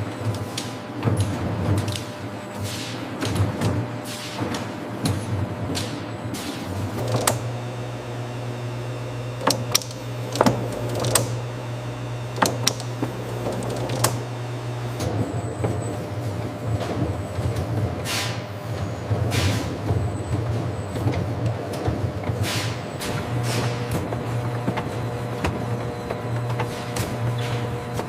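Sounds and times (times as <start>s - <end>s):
machinery humming: 6.2s - 19.3s
sharp clicks and clanks: 6.9s - 7.6s, 9.3s - 11.5s, 12.4s - 14.3s.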